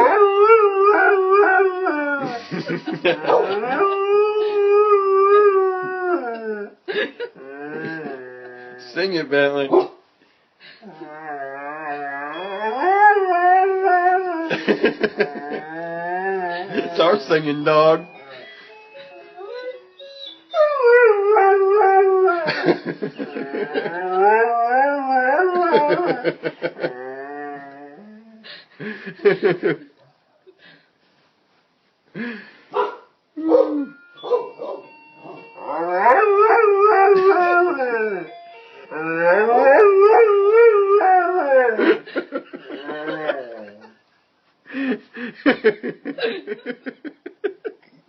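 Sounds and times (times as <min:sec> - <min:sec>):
person laughing: 0:02.2 - 0:04.6, 0:06.9 - 0:08.3, 0:14.4 - 0:17.1, 0:22.3 - 0:24.6, 0:25.5 - 0:27.2, 0:28.8 - 0:29.9, 0:41.7 - 0:44.0, 0:44.7 - 0:47.9
dog howling: 0:07.4 - 0:08.8, 0:10.9 - 0:14.6, 0:23.2 - 0:28.3, 0:33.4 - 0:41.8.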